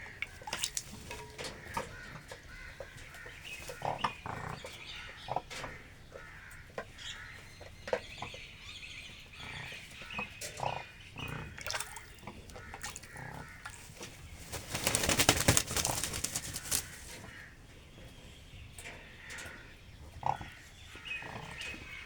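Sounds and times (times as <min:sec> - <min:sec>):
bird splashing in water: 0:00.1 - 0:02.0, 0:11.6 - 0:17.4
faint bird calls: 0:09.4 - 0:17.6
wings beating: 0:13.7 - 0:17.3.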